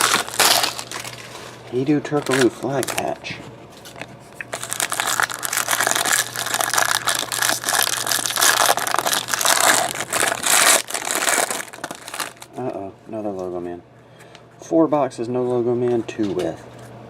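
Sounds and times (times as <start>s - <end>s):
plastic wrapping crinkling and tearing: 0.0s - 12.6s.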